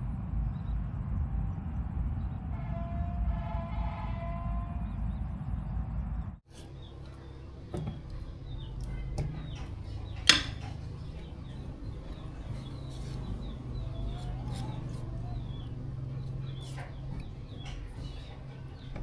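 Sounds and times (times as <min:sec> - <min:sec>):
small birds chirping: 0:00.0 - 0:02.6, 0:04.4 - 0:19.0
steady low hum: 0:00.0 - 0:19.0
sharp clank: 0:10.3 - 0:10.7.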